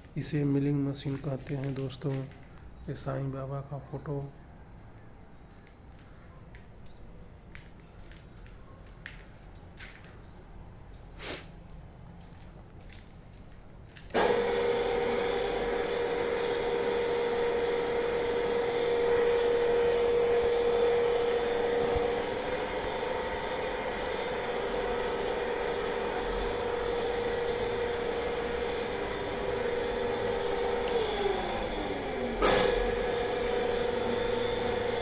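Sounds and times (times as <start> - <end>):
milling machine motor whine: 14.1 - 35.0.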